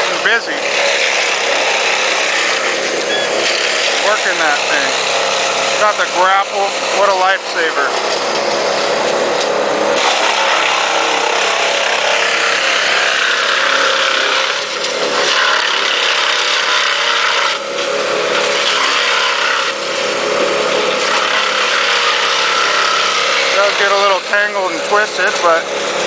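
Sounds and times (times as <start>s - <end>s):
diesel engine running under load: 0.0s - 16.3s, 19.7s - 26.0s.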